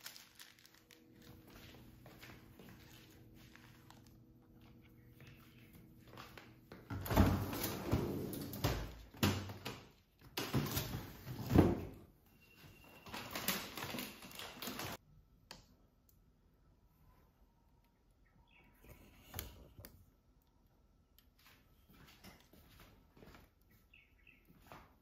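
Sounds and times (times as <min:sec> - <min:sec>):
items knocked and slid in fridge: 0:06.8 - 0:12.1.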